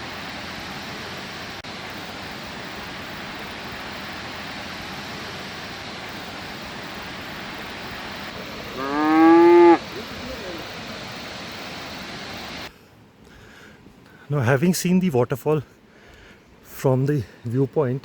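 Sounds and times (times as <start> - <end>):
cow mooing: 8.8 - 9.8.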